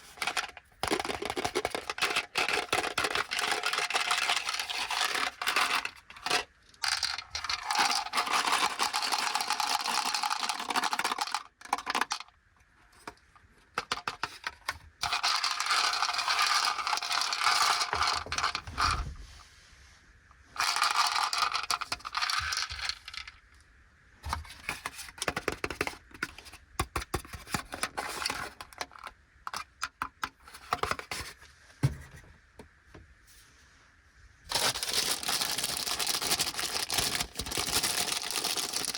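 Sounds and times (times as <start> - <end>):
plastic packaging crinkling: 34.5 - 38.9.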